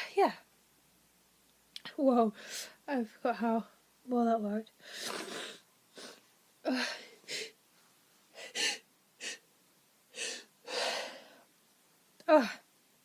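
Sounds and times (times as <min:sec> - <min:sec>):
person gasping and sniffing: 0:08.3 - 0:09.4, 0:10.1 - 0:11.4.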